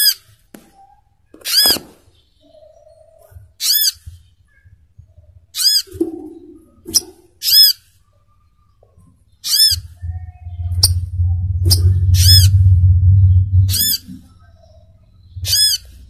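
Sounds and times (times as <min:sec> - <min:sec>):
bird harsh call: 0:00.0 - 0:02.8, 0:13.7 - 0:16.0
faint lower chatter: 0:00.0 - 0:16.0.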